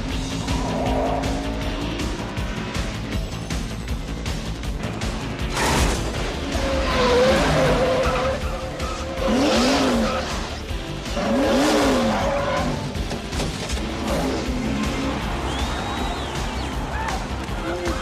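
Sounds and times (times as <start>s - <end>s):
film score music: 0.0s - 18.0s
race cars at speed: 0.0s - 18.0s
tires squealing and skidding: 5.5s - 18.0s.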